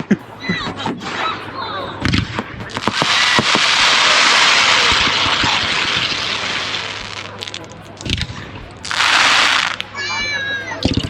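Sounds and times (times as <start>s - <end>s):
deep fireworks boom: 2.0s - 9.8s
fireworks bangs: 2.0s - 10.1s
fireworks crackling hiss: 2.1s - 10.1s.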